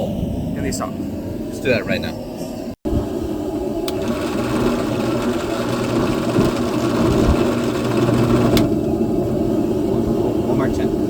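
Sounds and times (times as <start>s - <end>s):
drill click: 3.8s - 8.9s
electric drill boring metal: 3.9s - 8.9s.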